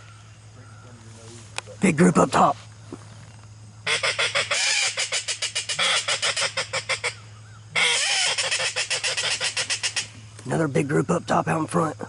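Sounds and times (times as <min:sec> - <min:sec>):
duck call notes: 0:03.8 - 0:10.2.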